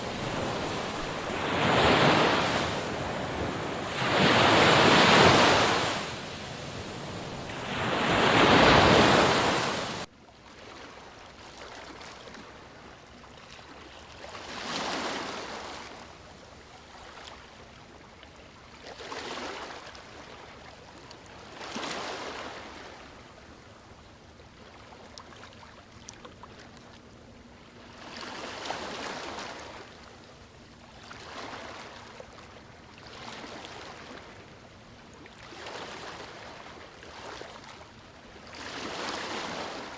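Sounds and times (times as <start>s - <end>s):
ocean waves washing onto shore: 0.0s - 12.7s, 33.0s - 39.9s.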